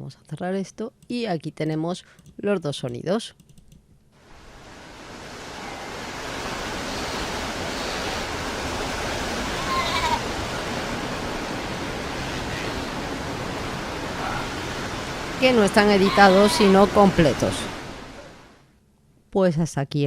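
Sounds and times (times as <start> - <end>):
background noise: 0.0 - 20.0
animal bleating: 9.2 - 13.0, 15.9 - 17.0.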